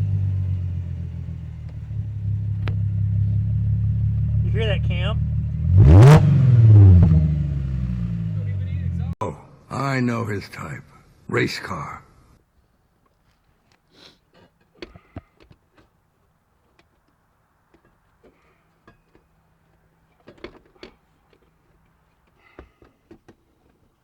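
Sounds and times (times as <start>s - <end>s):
metal parts clicking and knocking: 16.6s - 24.0s.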